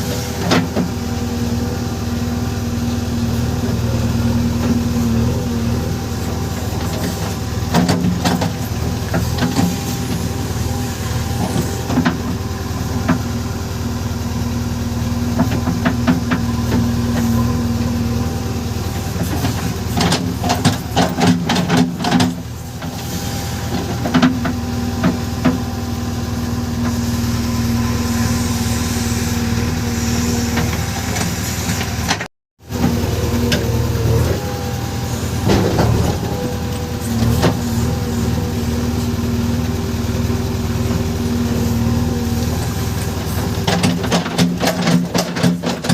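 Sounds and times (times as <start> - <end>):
diesel engine running: 0.0 - 45.9
machine clanks and knocks: 19.2 - 22.4, 43.6 - 45.9.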